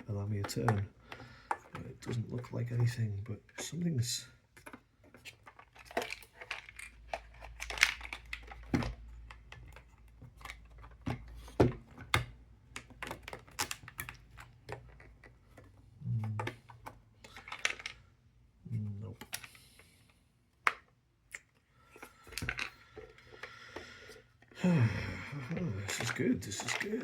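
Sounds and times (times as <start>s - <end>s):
puzzle box pieces clicking: 4.6s - 11.0s, 12.7s - 18.0s, 24.6s - 27.0s.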